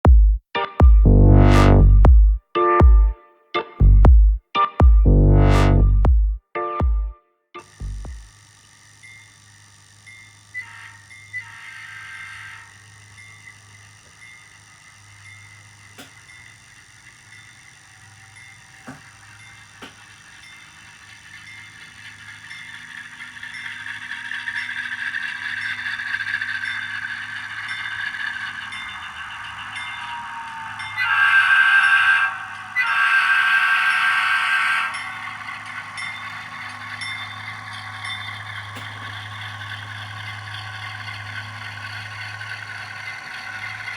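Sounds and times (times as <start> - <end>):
train running: 7.6 - 43.9
train horn blasts: 28.6 - 36.1.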